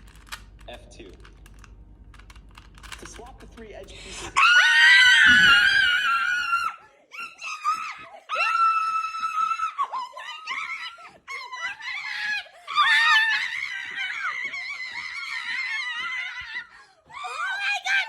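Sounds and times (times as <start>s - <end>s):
child squealing and screeching: 4.3s - 18.0s.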